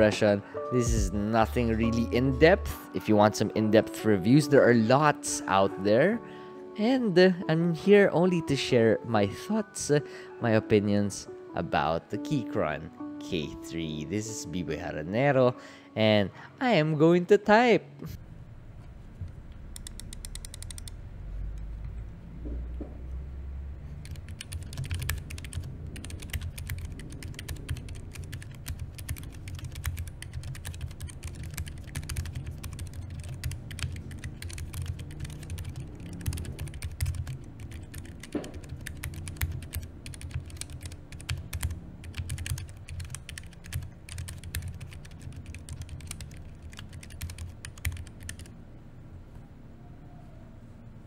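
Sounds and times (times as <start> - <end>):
mechanical keyboard typing: 19.7 - 21.0, 24.0 - 48.5.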